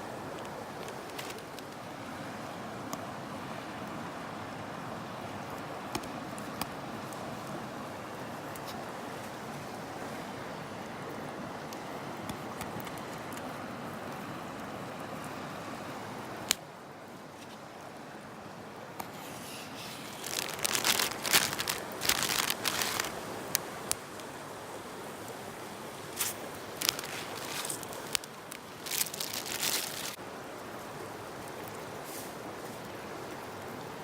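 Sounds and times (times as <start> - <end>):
river water rushing: 0.0 - 34.0
crinkling rustling handling noise: 0.4 - 1.8, 19.1 - 24.2, 26.1 - 30.2.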